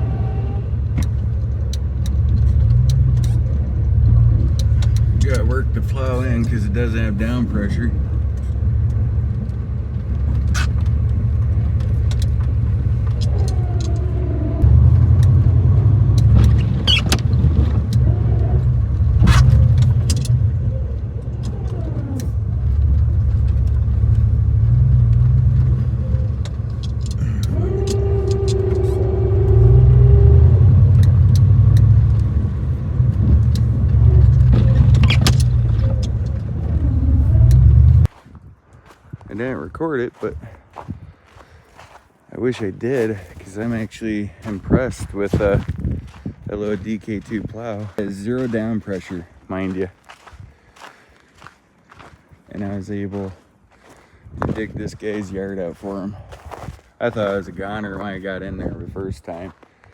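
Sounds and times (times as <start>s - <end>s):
pickup truck engine rumbling: 0.0s - 38.1s.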